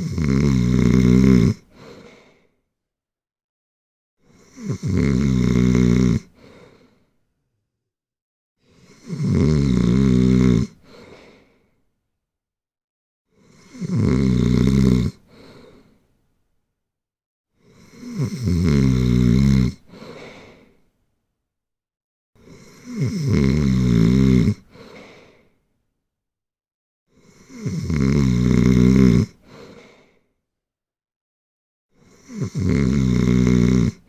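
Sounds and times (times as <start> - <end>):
loud snoring: 0.0 - 1.7, 4.3 - 6.5, 8.7 - 11.0, 13.3 - 15.4, 17.6 - 20.0, 22.4 - 25.0, 27.1 - 29.8, 32.0 - 34.0
soft breath out: 6.4 - 7.2, 10.8 - 11.8, 15.3 - 16.1, 19.9 - 20.9, 24.7 - 25.6, 29.4 - 30.3.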